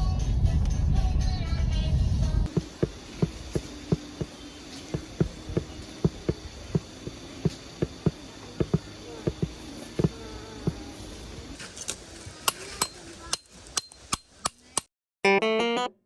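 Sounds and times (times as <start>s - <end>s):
faint steady hum: 0.6s - 11.6s.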